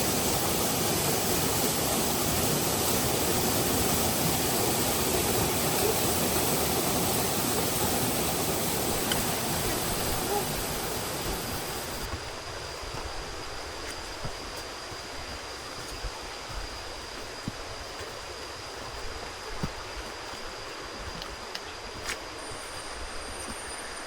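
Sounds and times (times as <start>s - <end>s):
thin steady high tone: 0.0s - 12.1s, 22.4s - 24.0s
waterfall rushing: 0.0s - 12.1s.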